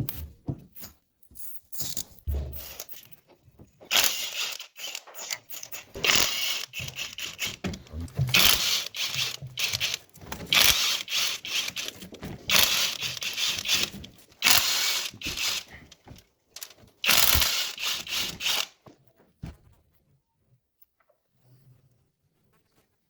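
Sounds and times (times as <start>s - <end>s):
hand tool rasping strokes: 3.9s - 18.8s.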